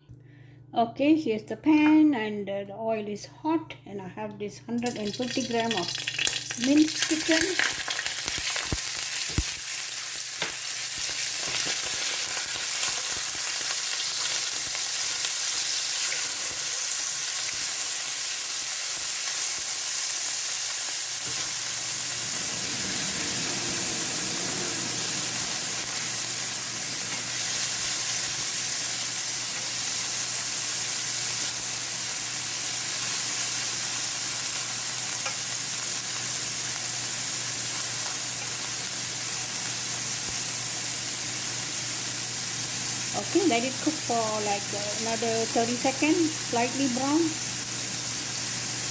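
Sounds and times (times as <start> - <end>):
meat sizzling in hot oil: 4.8 - 48.9
low hum: 21.6 - 28.3.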